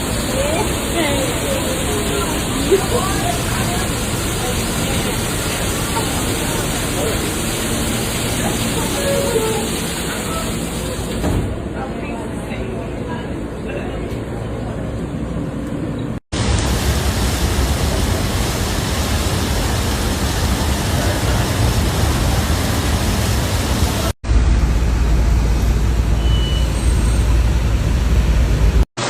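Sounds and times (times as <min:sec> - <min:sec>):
heavy rain hiss: 0:00.0 - 0:11.5, 0:16.4 - 0:26.1
rushing floodwater: 0:00.0 - 0:12.9, 0:16.4 - 0:24.2
heavy low rumble: 0:16.4 - 0:26.2.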